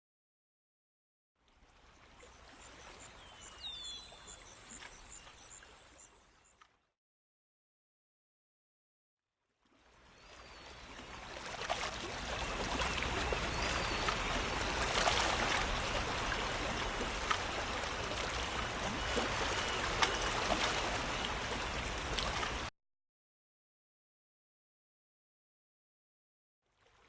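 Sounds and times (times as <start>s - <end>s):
stream water flowing: 1.7s - 6.3s, 10.0s - 22.7s
small splashes and drips: 10.8s - 22.7s.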